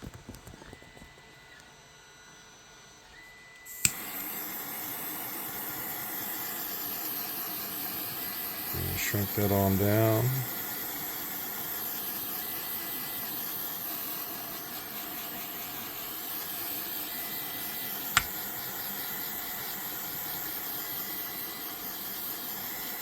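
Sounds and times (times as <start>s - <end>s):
lighter flame hissing: 3.7s - 23.0s
sharp click: 18.1s - 18.4s.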